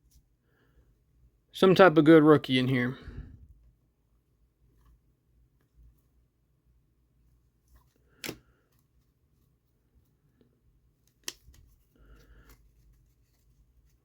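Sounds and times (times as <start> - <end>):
cards rustling: 7.5 - 10.3, 10.9 - 14.0.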